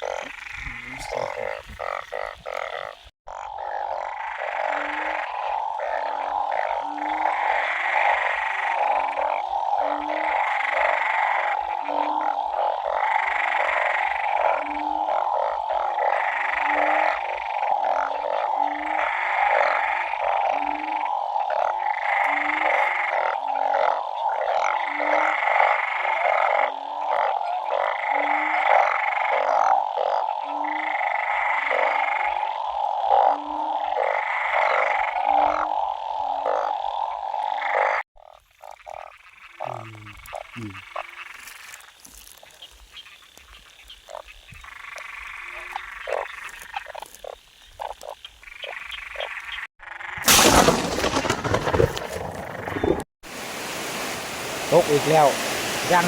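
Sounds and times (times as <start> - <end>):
low frog call: 0.0 - 41.8
frog chorus: 0.0 - 53.0, 54.6 - 56.0
higher pulsing frog calls: 0.0 - 56.0.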